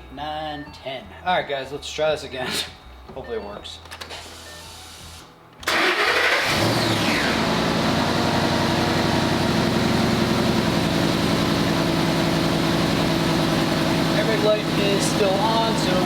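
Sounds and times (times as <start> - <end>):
car engine starting and idling: 5.6 - 16.0.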